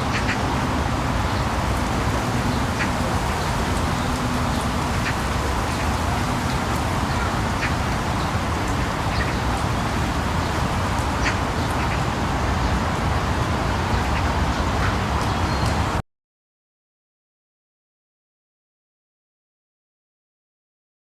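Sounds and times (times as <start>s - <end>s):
rain: 0.0s - 16.0s
wind: 0.0s - 16.0s.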